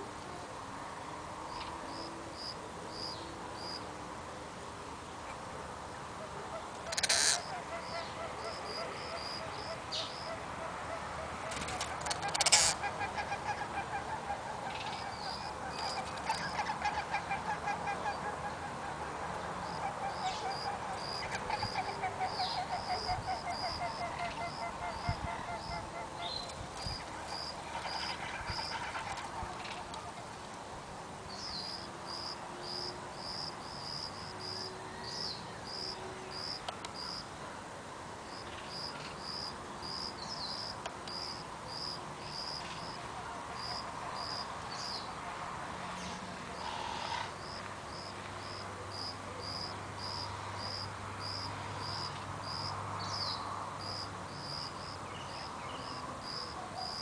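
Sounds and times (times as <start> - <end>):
insect chirping: 1.5 - 3.9, 6.9 - 10.4, 19.6 - 28.8, 31.3 - 37.3, 38.2 - 43.0, 43.6 - 45.1, 46.6 - 57.0.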